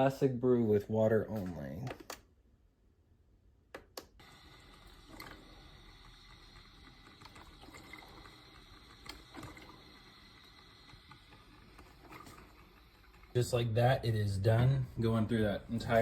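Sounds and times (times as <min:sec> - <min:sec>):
coffee maker trickling and gurgling: 0:04.2 - 0:16.0.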